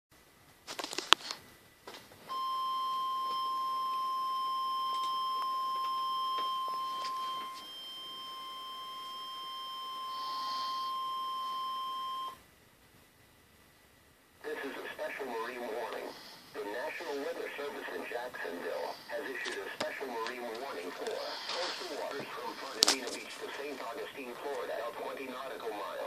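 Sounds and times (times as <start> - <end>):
steady high-pitched beep: 2.3 - 12.4.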